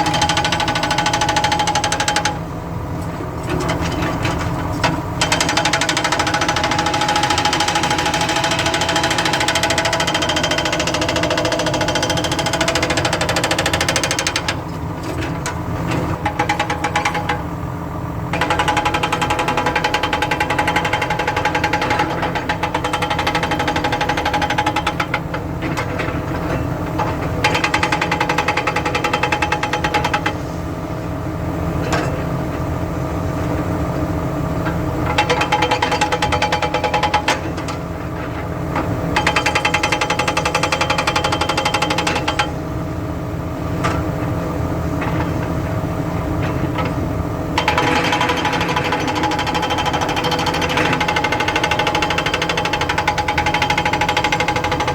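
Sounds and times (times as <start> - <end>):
hydraulic breaker hammering: 5.2 - 14.6, 47.6 - 54.9.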